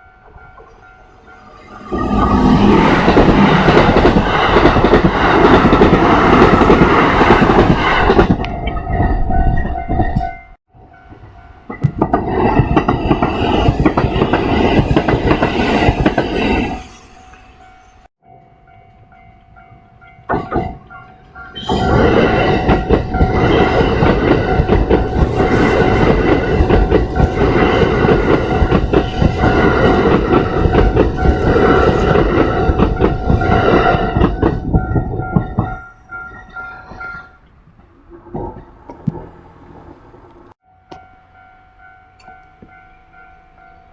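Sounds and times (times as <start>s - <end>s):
level crossing warning bell: 0.0s - 3.8s, 17.4s - 37.4s, 40.6s - 43.9s
electric train passing: 0.0s - 43.9s.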